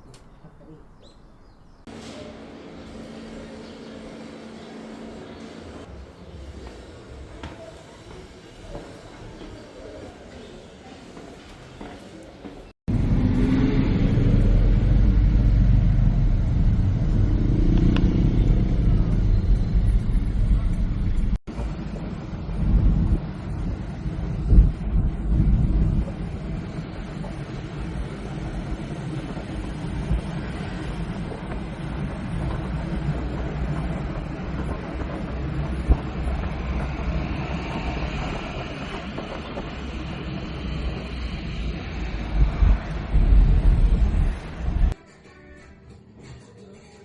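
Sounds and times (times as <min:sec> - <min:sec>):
vehicle rumble in motion: 0:12.9 - 0:45.0.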